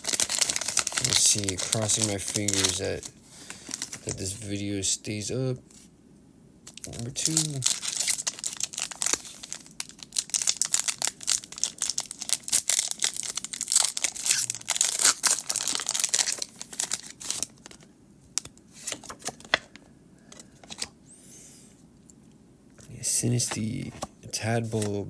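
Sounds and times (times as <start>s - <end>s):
foil wrapper crinkling: 0.0s - 4.4s, 6.7s - 19.8s.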